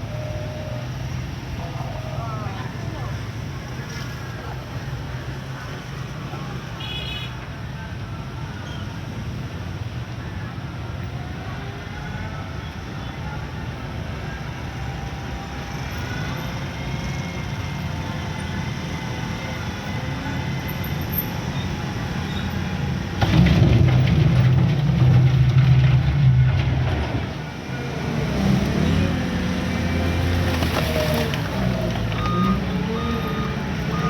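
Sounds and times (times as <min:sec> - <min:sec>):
earthmoving machine diesel engine: 0:14.9 - 0:34.0.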